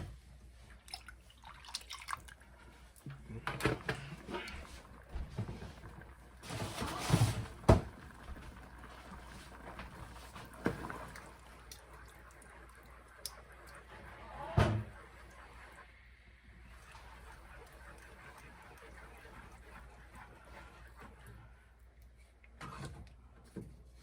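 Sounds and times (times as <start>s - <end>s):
objects knocking and thudding: 5.1s - 8.4s.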